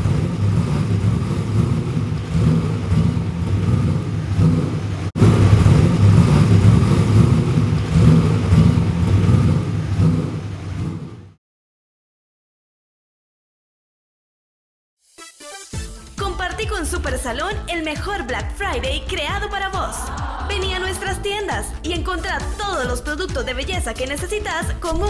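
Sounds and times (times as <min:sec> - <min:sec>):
racing car engine rumble: 0:00.0 - 0:11.4.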